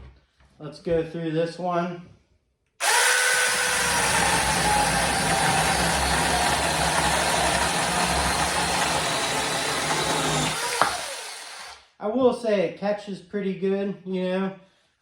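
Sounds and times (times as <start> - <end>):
mini chainsaw cutting wood: 2.8 - 11.9.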